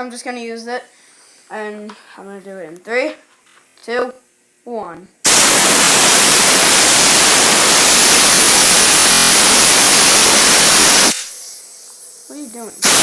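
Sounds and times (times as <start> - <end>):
compressed air hissing: 5.3 - 13.0.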